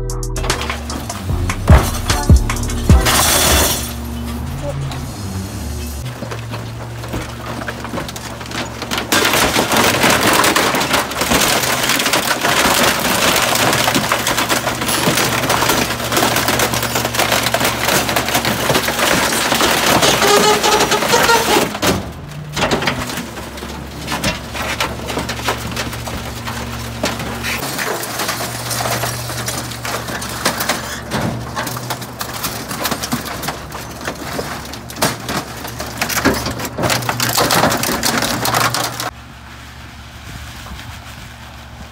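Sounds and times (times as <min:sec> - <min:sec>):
truck engine hum: 0:00.0 - 0:41.9
wood splintering and cracking: 0:06.0 - 0:39.2.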